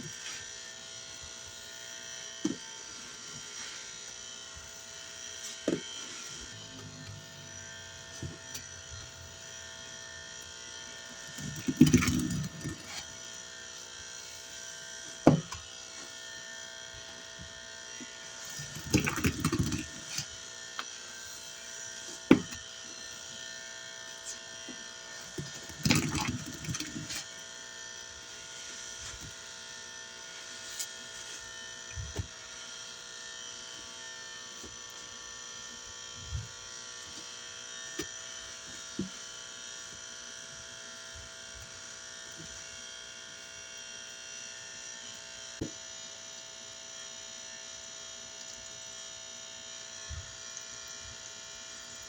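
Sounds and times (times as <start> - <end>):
soapy sponge squelching: 18.5 - 20.3, 25.4 - 27.3.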